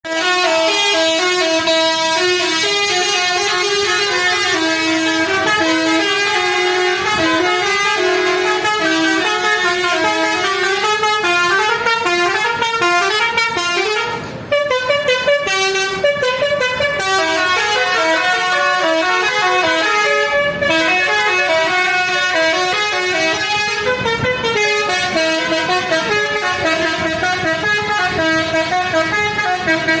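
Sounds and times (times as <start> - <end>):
bus air horns playing a tune: 0.0 - 30.0.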